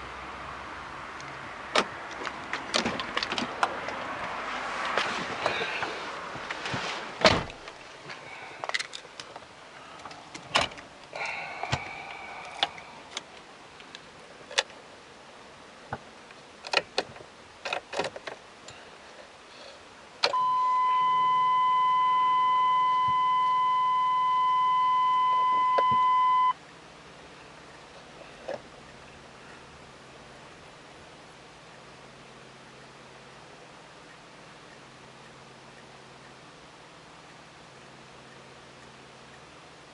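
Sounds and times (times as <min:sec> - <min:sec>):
loud electronic beep: 0:20.3 - 0:26.6.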